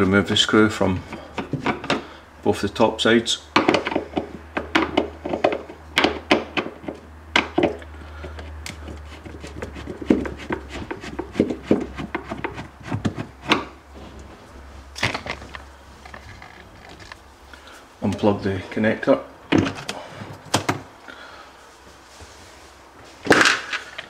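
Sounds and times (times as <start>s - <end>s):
plastic parts clicking and rubbing: 15.0s - 17.2s.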